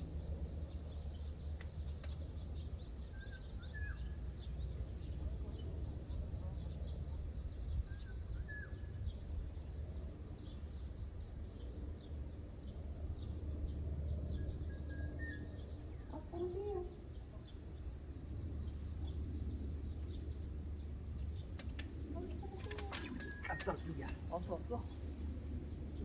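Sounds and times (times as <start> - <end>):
steady low rumble: 0.0 - 26.0
bird calls: 14.3 - 26.0.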